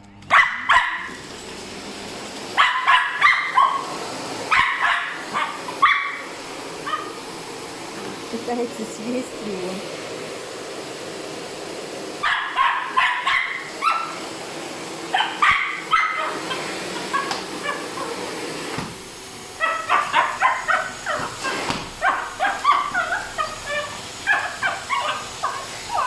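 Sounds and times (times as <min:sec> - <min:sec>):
dog barking and yipping: 0:00.3 - 0:01.2, 0:02.5 - 0:07.3, 0:12.2 - 0:14.3, 0:15.0 - 0:18.6, 0:19.5 - 0:26.0.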